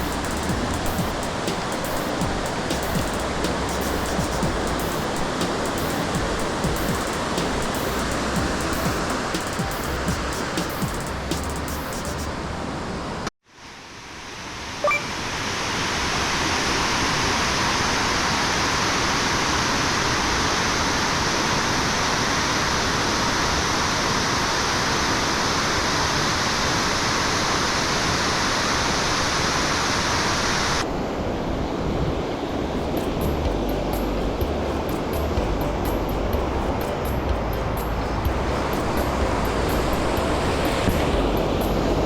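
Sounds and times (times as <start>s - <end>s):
waterfall rushing: 0.0s - 13.0s, 32.4s - 42.0s.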